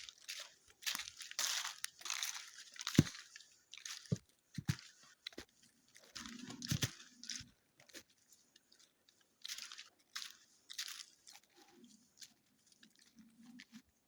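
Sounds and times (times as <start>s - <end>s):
footsteps crunching dry leaves: 0.0s - 5.0s, 9.4s - 11.6s.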